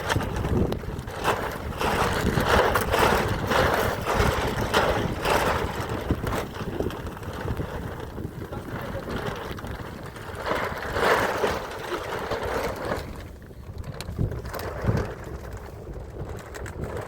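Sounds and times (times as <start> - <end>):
wind rumbling on microphone: 0.0 - 17.0.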